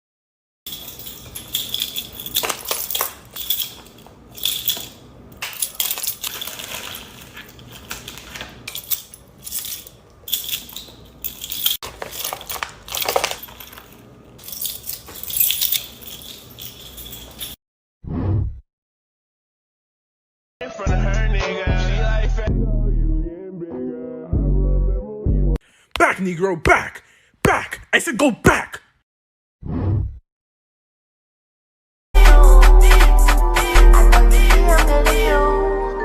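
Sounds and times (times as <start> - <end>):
small metal objects jingling: 0.7 - 17.6.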